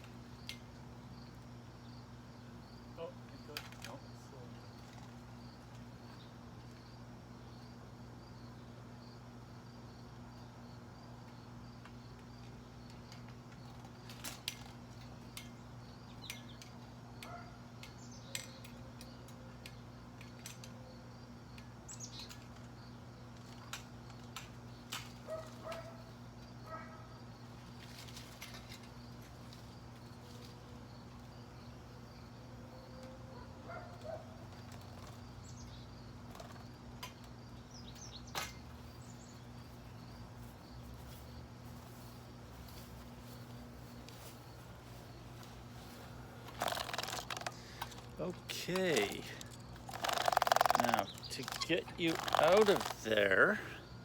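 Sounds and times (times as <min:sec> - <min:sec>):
insects chirping: 0:00.0 - 0:54.0
sharp clicks: 0:46.4 - 0:53.4.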